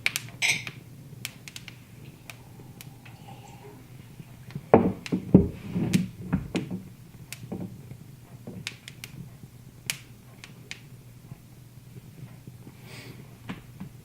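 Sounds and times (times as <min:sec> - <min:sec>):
faint low hum: 0:00.0 - 0:08.4
wood fire crackling: 0:00.0 - 0:14.0.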